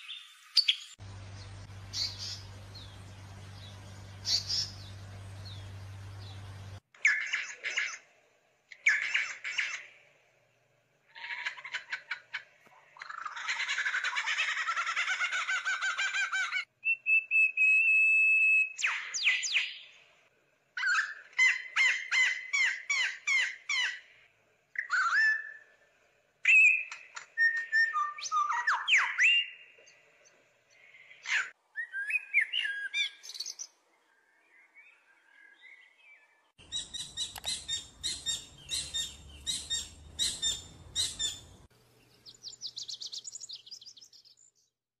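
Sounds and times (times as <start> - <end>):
songbirds chirping and whistling: 0.0 - 8.1, 16.7 - 20.1, 20.8 - 44.7.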